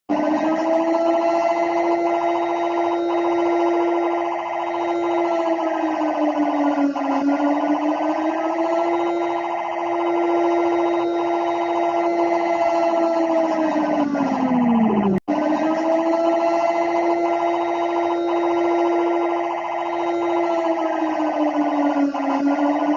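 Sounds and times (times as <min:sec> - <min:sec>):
alarm siren: 0:00.0 - 0:22.9.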